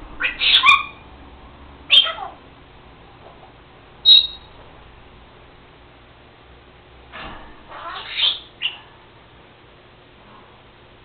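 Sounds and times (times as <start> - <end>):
parrot calls: 0.2 - 1.1, 1.9 - 2.4, 4.0 - 4.5, 7.7 - 8.8.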